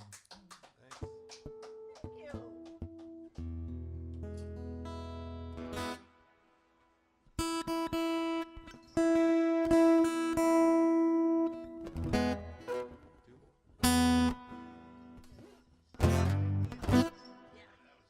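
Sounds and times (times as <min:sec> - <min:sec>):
guitar chords strummed: 0:01.1 - 0:06.3, 0:07.4 - 0:13.2, 0:13.8 - 0:17.6
guitar note plucked: 0:16.0 - 0:17.6.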